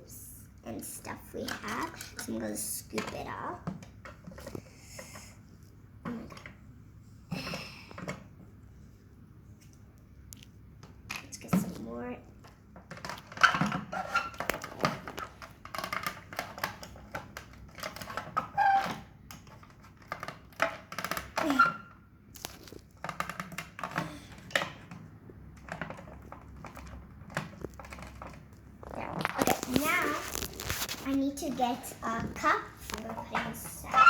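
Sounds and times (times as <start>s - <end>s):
plastic tools clicking and scraping: 12.4s - 31.6s.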